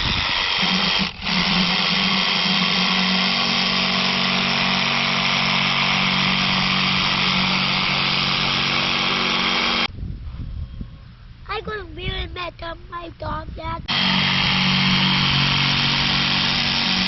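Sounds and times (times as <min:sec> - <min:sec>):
power saw motor running: 0:00.0 - 0:09.9, 0:13.9 - 0:17.0.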